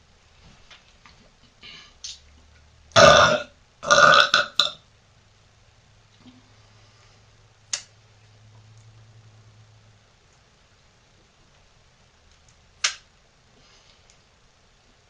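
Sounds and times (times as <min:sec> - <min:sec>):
woman burping loudly: 0:03.0 - 0:04.8.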